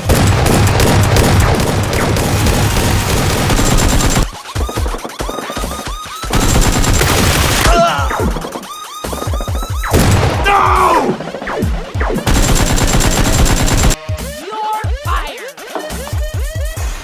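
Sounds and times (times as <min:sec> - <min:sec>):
automatic gunfire: 0:00.0 - 0:04.3, 0:06.3 - 0:07.7, 0:12.3 - 0:14.0
background music: 0:00.0 - 0:17.0.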